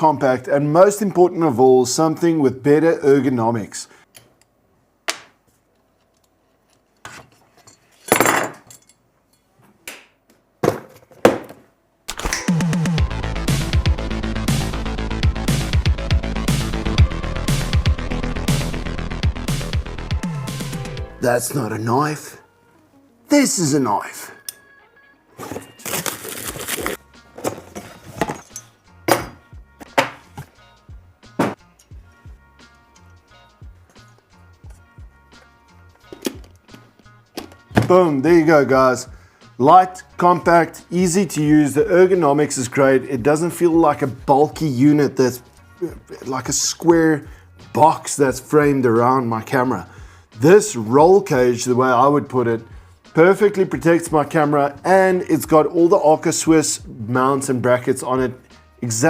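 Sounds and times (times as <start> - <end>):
knocks and clinks of hardware: 12.1 - 12.6.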